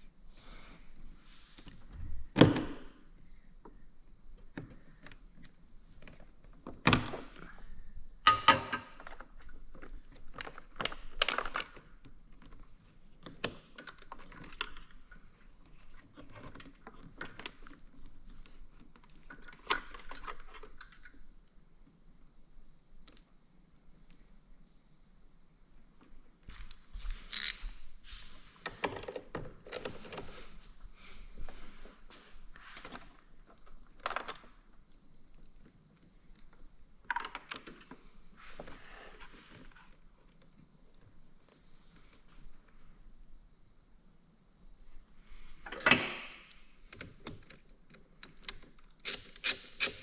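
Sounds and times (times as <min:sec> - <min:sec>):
metal hardware jingling and rattling: 0:19.3 - 0:21.3.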